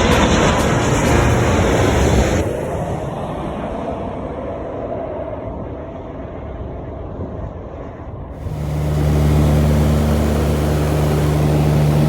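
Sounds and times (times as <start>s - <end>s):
aircraft engine drone: 8.4s - 12.0s.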